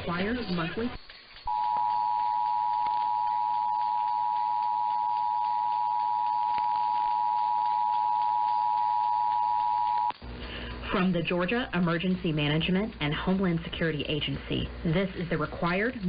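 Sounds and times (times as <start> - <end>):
two-tone alert signal: 1.5 - 10.1.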